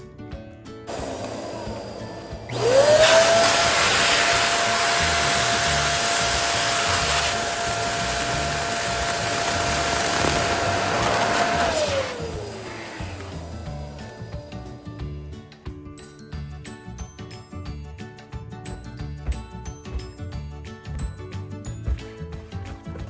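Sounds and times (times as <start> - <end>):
balloon inflator motor: 0.9 - 14.3.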